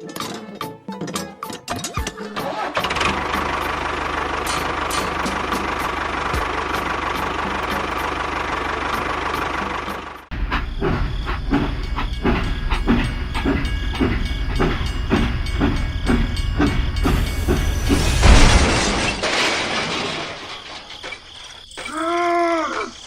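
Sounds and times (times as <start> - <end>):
small engine chugging: 1.4 - 19.3.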